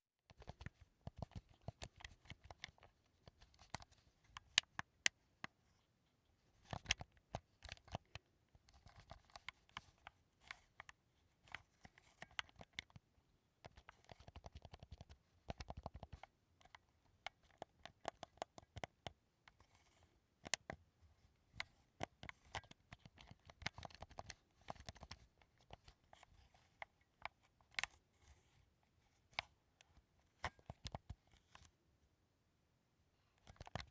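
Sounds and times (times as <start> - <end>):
plastic controller buttons clicking: 6.7 - 10.0, 13.7 - 19.1, 22.0 - 25.9.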